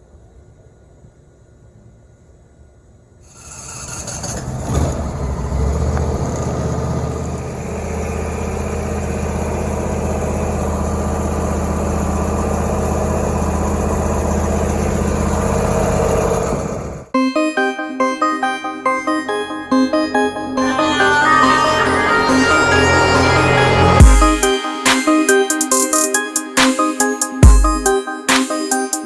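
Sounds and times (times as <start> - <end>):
engine starting and running: 3.3 - 17.1, 19.2 - 26.8.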